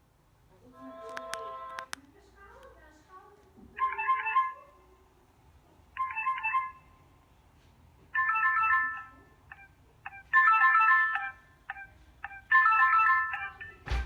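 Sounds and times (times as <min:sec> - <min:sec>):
electronic ringtone melodies: 0:03.8 - 0:04.7, 0:08.2 - 0:13.8.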